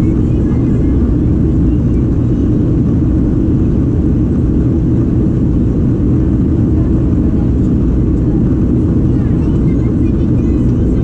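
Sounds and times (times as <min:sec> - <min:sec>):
jet engine rumble in cabin: 0:00.0 - 0:11.0.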